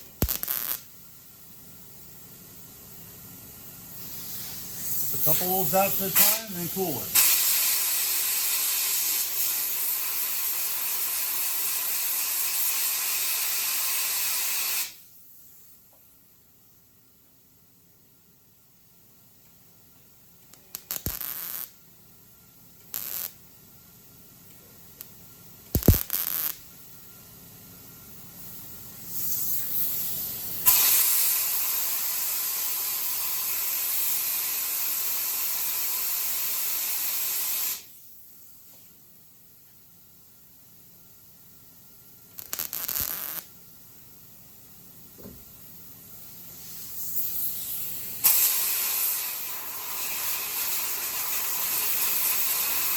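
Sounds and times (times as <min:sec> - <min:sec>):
compressed air hissing: 0:03.8 - 0:15.1, 0:28.4 - 0:38.1, 0:46.3 - 0:52.9.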